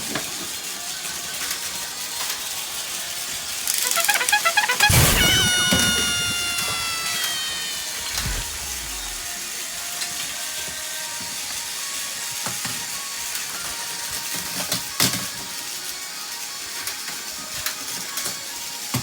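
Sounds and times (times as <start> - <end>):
toy trains whirring: 0.0 - 9.3
descending tone: 3.7 - 9.4.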